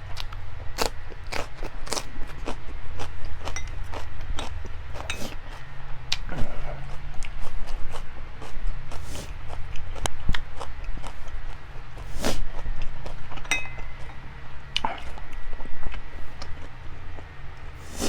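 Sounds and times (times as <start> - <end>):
person chewing: 0.1 - 18.0
ringing clink of tableware: 13.5 - 14.0.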